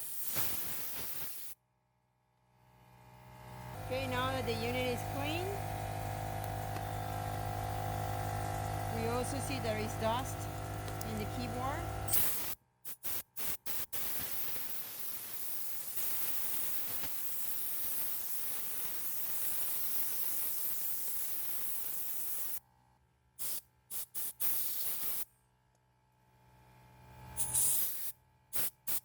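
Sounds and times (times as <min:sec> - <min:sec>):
compressed air blasts: 0:00.0 - 0:01.6, 0:04.0 - 0:22.6, 0:23.4 - 0:25.3, 0:27.4 - 0:29.0.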